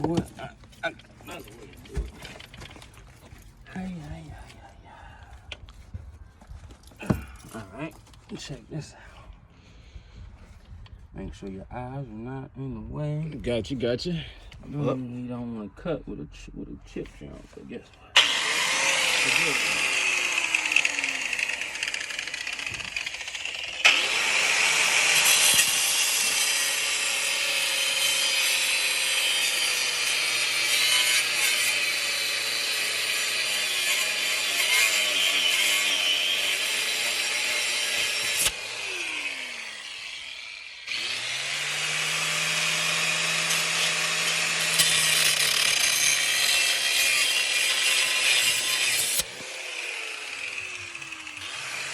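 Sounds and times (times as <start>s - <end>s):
power tool grinding metal pipe: 17.2s - 51.9s
motor winding down: 18.2s - 27.0s, 37.5s - 47.0s, 47.8s - 51.9s.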